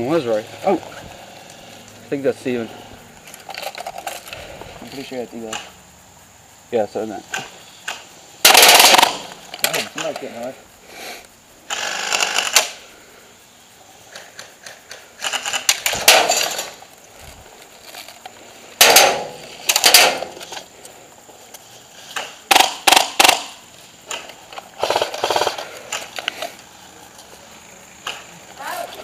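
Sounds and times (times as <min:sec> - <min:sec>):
single airsoft shots: 0:07.3 - 0:09.3, 0:18.8 - 0:20.4
airsoft guns firing bursts: 0:08.4 - 0:09.3, 0:22.5 - 0:23.6, 0:24.8 - 0:25.7.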